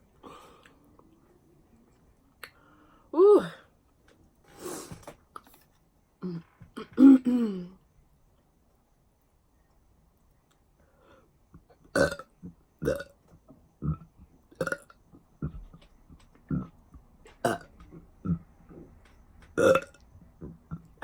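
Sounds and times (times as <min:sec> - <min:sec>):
woman burping: 0:06.2 - 0:07.8, 0:12.0 - 0:13.1, 0:13.8 - 0:15.5, 0:19.6 - 0:20.0.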